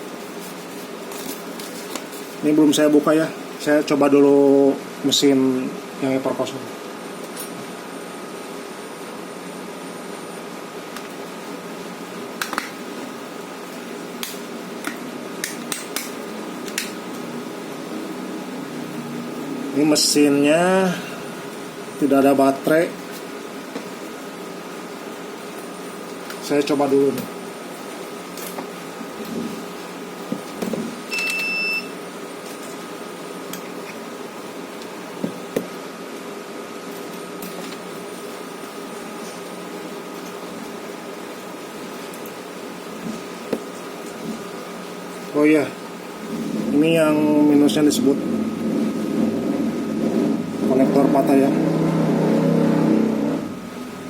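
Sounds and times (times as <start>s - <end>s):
room hum: 0.0s - 54.0s
electronic beep: 31.1s - 31.9s.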